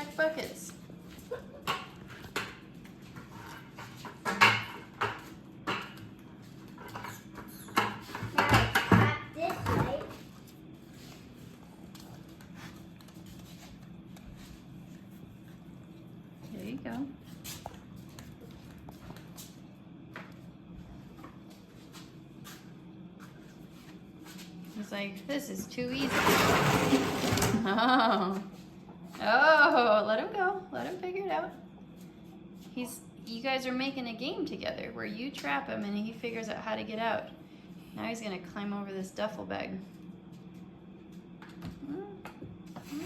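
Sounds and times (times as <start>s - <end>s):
low steady hum: 0.0s - 43.0s
buckets knocking and clattering: 26.0s - 27.7s.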